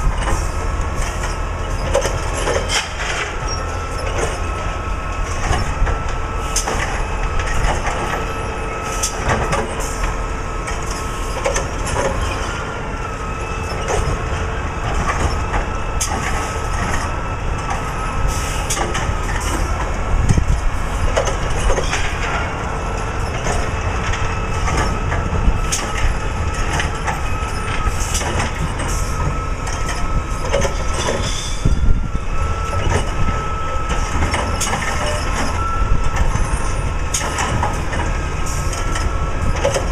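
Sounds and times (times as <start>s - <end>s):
carts knocking and clanking: 0.0s - 4.5s, 10.7s - 12.6s, 13.6s - 32.0s, 32.7s - 39.9s
constant whine: 0.0s - 39.9s
diesel truck engine rumbling: 0.0s - 39.9s.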